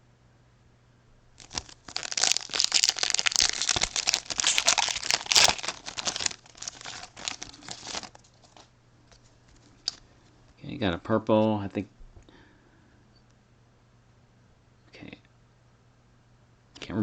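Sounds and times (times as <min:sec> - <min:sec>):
wrapper tearing and crinkling: 0:01.4 - 0:08.7.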